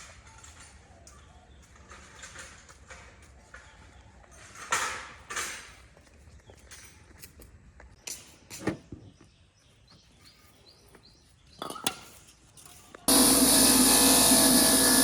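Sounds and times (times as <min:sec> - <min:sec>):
loud steady machine noise: 0:13.1 - 0:15.0.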